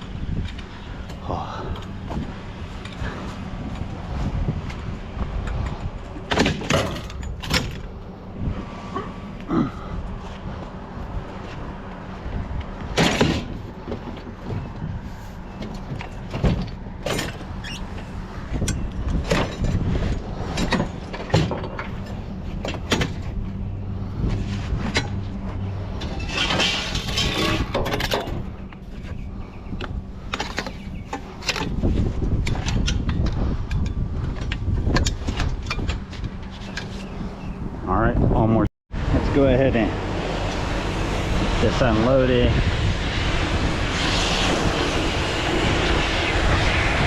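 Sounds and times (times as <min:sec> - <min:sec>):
vehicle engine humming: 0:00.0 - 0:37.9, 0:39.0 - 0:47.0
metallic knocks and clanks: 0:05.4 - 0:08.0, 0:26.0 - 0:28.7.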